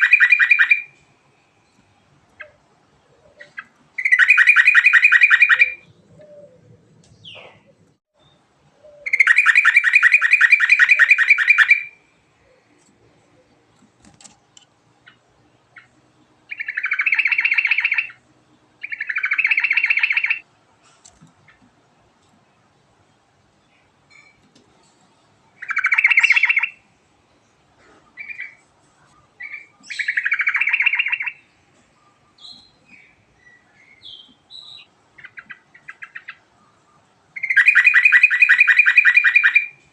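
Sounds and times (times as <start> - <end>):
bird singing rapid trills: 3.4 - 6.0, 15.0 - 18.2, 18.8 - 20.4, 25.6 - 26.8, 29.3 - 39.8.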